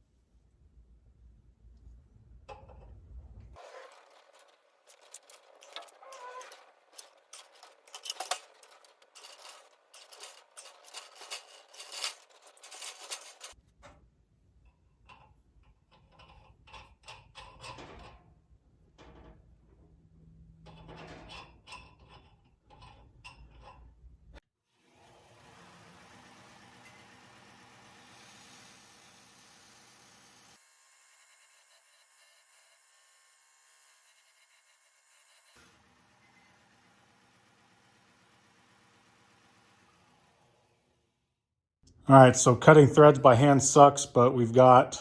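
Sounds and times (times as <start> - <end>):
metal tools clinking: 3.8 - 13.6, 20.6 - 24.0.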